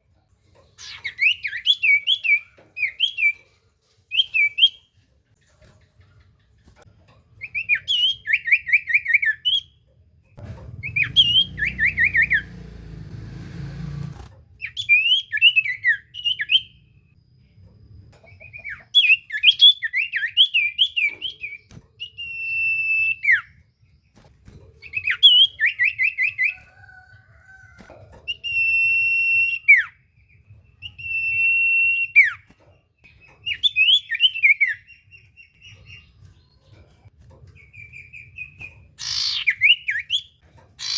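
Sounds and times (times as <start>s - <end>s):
bird chirping and whistling: 0.8s - 3.4s, 7.5s - 9.7s, 10.8s - 12.6s, 14.6s - 16.8s, 18.4s - 23.5s, 24.9s - 26.6s, 28.3s - 30.0s, 30.8s - 32.5s, 33.4s - 36.0s, 37.8s - 40.9s
low rumble: 10.4s - 14.3s.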